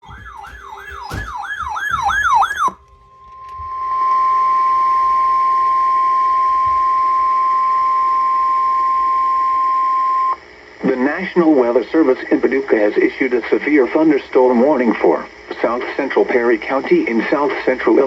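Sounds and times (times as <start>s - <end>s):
siren-like wail: 0.0s - 8.0s
steady alarm tone: 0.0s - 9.5s.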